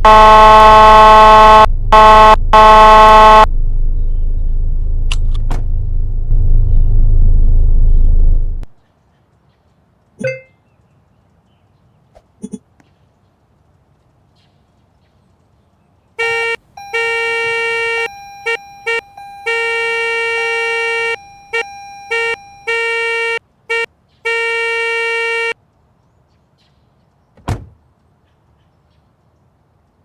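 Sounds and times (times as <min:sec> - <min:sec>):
car horn honking: 0:00.0 - 0:03.5, 0:16.2 - 0:25.6
dull thump: 0:27.4 - 0:27.8.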